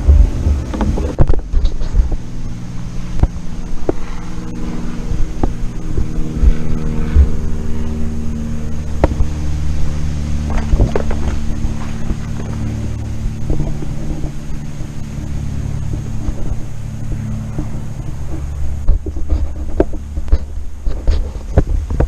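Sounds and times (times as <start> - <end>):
knocks and clatter: 0.0 - 2.3, 10.4 - 22.0
motor hum: 0.0 - 22.0.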